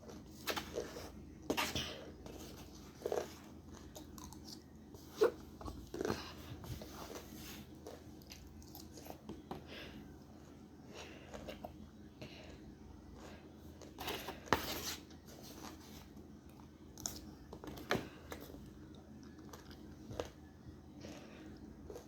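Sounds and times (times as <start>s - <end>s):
person crunching peppers: 2.6s - 9.3s, 19.2s - 20.4s.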